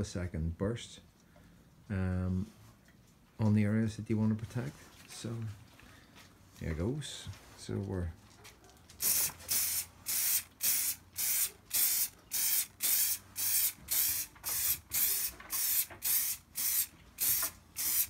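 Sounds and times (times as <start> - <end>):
aerosol spray hissing puffs: 9.0 - 18.0.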